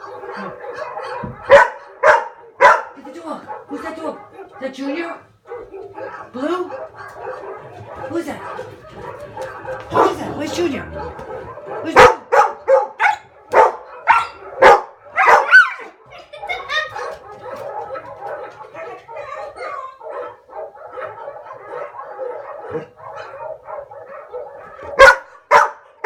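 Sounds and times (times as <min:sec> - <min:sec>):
dogs barking: 0:00.0 - 0:26.0.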